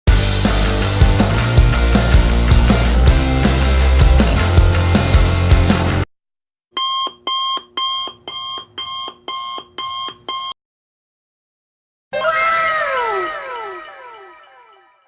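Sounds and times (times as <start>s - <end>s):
alarm clock beeping: 6.8s - 10.6s
tones sliding downward: 12.2s - 15.0s.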